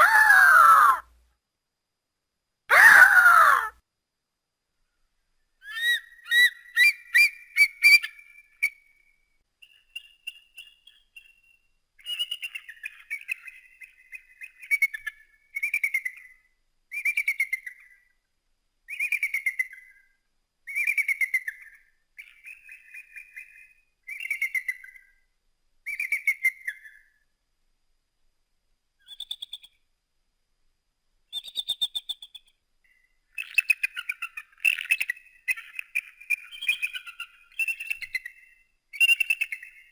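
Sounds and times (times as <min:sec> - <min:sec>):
eagle chittering whistled calls: 0:05.6 - 0:09.0, 0:31.3 - 0:32.5, 0:33.4 - 0:39.9.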